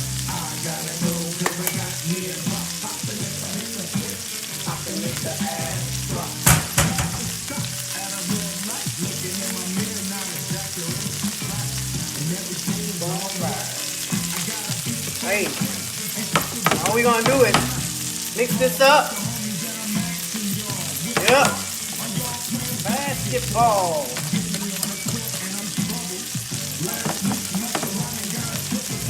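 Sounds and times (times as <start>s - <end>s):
food sizzling in a pan: 0.0s - 29.0s
sharp knock: 6.4s - 7.4s.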